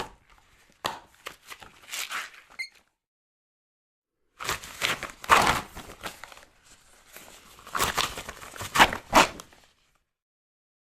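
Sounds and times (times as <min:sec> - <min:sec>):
rubber glove crinkling: 0:00.4 - 0:02.9, 0:04.4 - 0:10.1.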